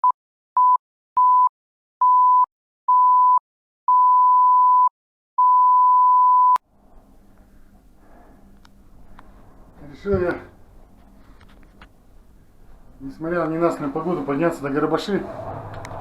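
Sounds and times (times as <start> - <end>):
electronic beep tone: 0.6 - 6.6.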